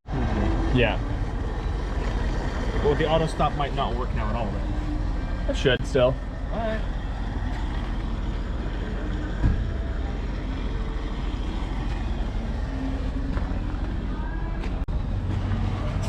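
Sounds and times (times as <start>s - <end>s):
low vehicle rumble: 0.0s - 16.0s
thump: 9.4s - 9.7s.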